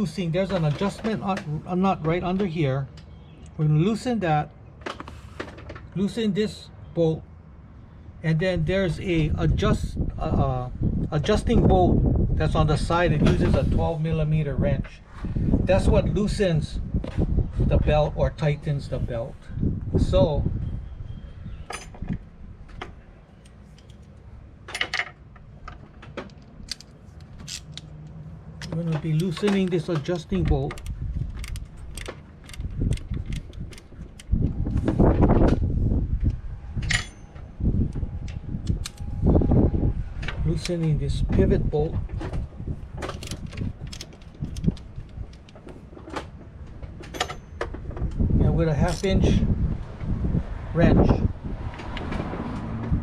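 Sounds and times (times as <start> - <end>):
wrench clinking against metal: 21.6 - 22.1, 36.8 - 37.4, 47.1 - 47.7
wrench clicking and knocking: 28.6 - 34.3.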